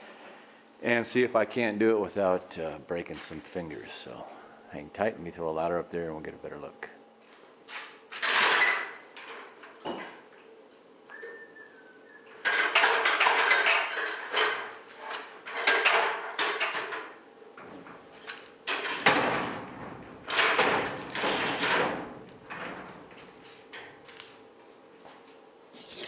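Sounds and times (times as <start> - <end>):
ladder clattering and scraping: 7.7 - 10.2, 12.4 - 24.2.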